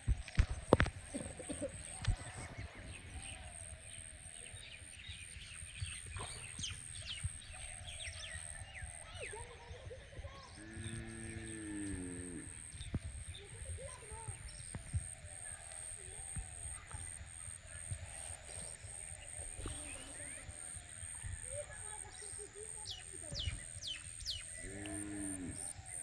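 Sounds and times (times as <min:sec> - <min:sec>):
small birds chirping: 0:00.0 - 0:26.0
cow mooing: 0:24.6 - 0:25.6.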